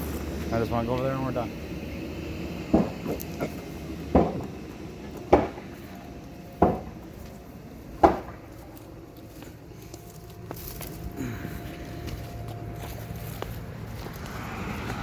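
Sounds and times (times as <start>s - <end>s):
sharp knocks: 2.7s - 3.2s, 4.1s - 4.6s, 5.3s - 5.7s, 6.6s - 7.0s, 8.0s - 8.4s.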